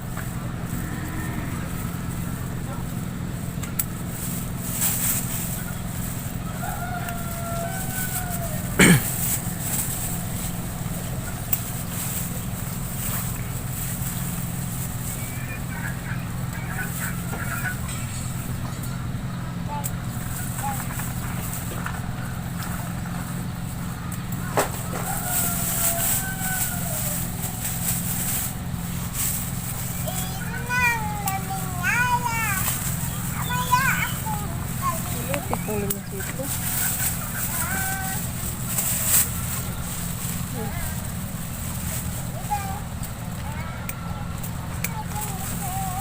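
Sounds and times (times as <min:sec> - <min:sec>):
steady low hum: 0:00.0 - 0:46.0
rooster crowing: 0:00.6 - 0:02.0, 0:06.2 - 0:09.6, 0:24.4 - 0:28.0.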